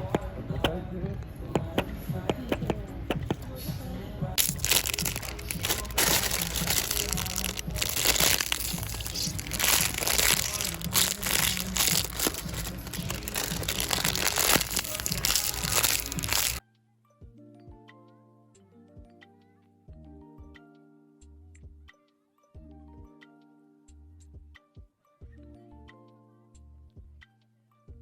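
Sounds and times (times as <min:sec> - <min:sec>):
indistinct voices: 0:00.0 - 0:16.6
background music: 0:00.0 - 0:28.0
rustling and crinkling: 0:04.4 - 0:16.6.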